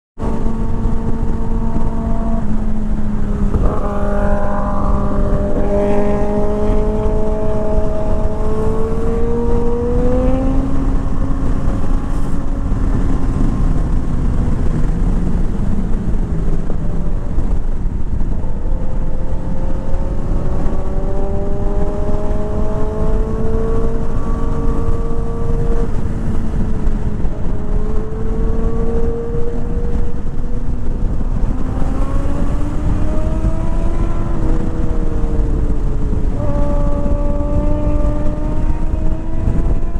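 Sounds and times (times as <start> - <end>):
motorcycle engine running under load: 0.2 - 39.9.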